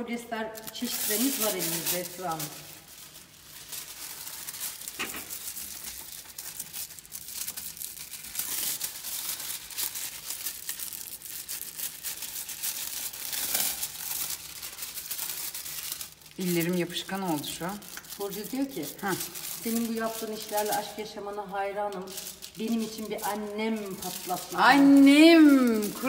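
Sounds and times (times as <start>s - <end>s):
foil crinkling and tearing: 0.4s - 26.0s.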